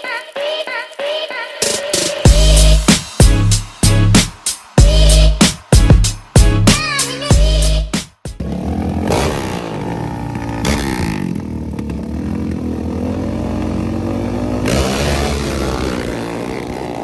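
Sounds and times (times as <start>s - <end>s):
atv engines revving: 8.4s - 17.0s.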